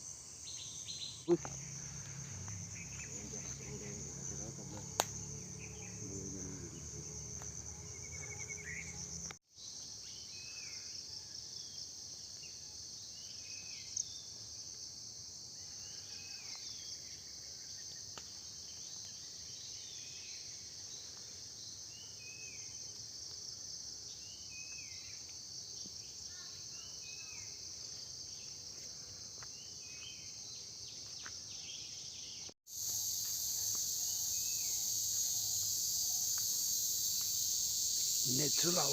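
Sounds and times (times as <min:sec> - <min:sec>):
crickets chorus: 0:00.0 - 0:38.9.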